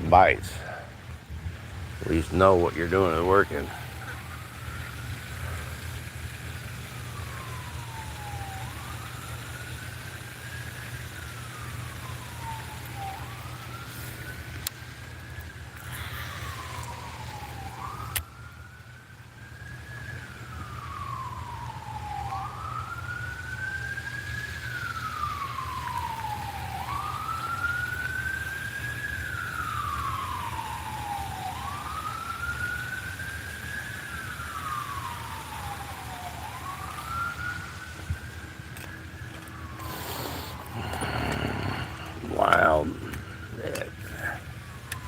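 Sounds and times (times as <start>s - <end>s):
emergency siren wailing: 0.0s - 45.0s
steady low hum: 38.1s - 45.0s.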